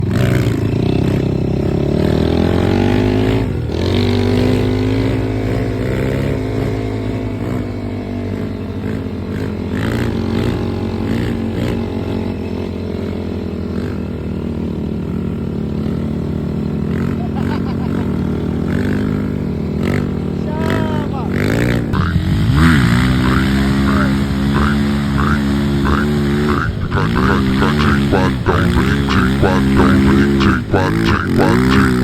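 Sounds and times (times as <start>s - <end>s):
quad bike engine revving: 0.0s - 32.0s.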